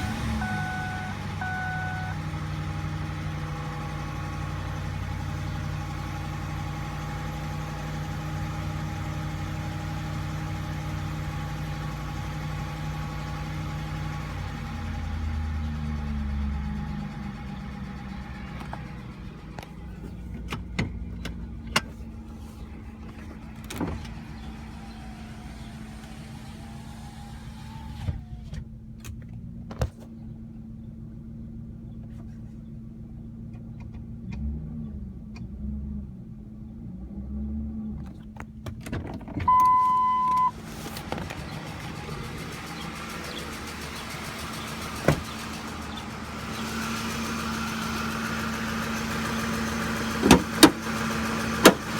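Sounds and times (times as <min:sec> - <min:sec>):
loud electronic beep: 0:00.0 - 0:02.2, 0:39.5 - 0:40.5
car engine idling: 0:00.0 - 0:36.9, 0:37.9 - 0:51.9
engine ticking clicks: 0:16.0 - 0:26.2, 0:33.2 - 0:34.6, 0:38.0 - 0:51.9.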